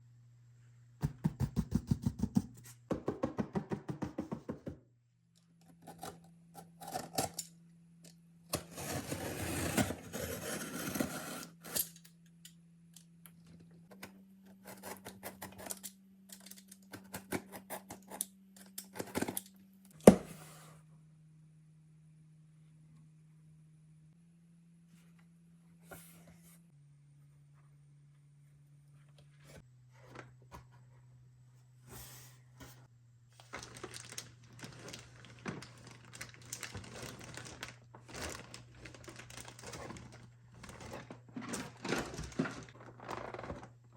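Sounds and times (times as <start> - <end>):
packaging rustling: 33.4 - 43.8.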